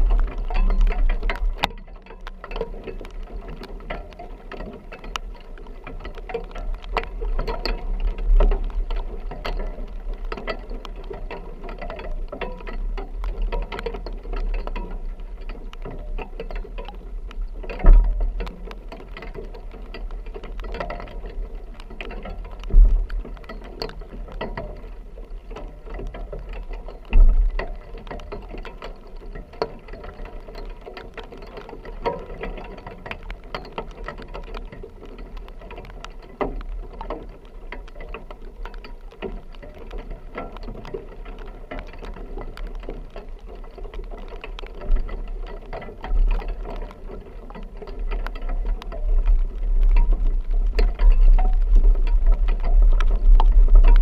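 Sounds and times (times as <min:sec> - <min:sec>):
rain on a vehicle roof: 0:00.0 - 0:54.0
low rumble: 0:48.2 - 0:54.0.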